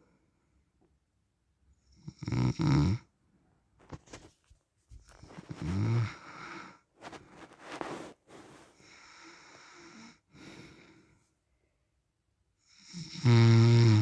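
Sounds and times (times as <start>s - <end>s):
man snoring: 12.8s - 14.0s.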